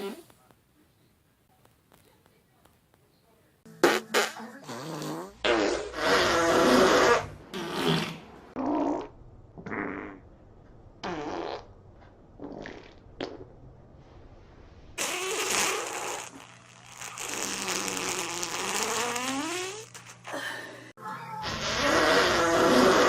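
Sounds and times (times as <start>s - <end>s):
farts: 3.8s - 10.2s, 11.0s - 11.7s, 12.4s - 13.5s, 15.0s - 20.3s, 21.5s - 23.0s.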